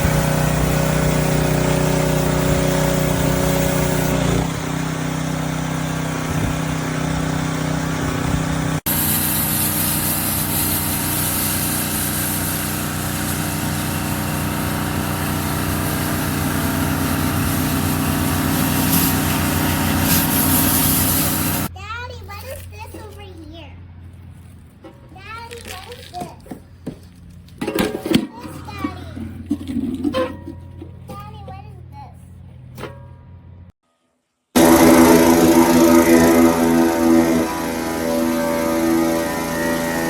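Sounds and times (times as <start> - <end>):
pressure washer engine running: 0.0 - 21.7, 34.6 - 40.0.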